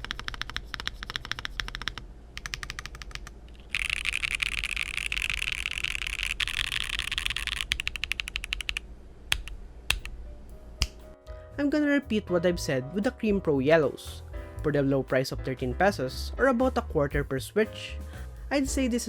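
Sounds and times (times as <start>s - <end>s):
mechanical keyboard typing: 0.0s - 10.2s.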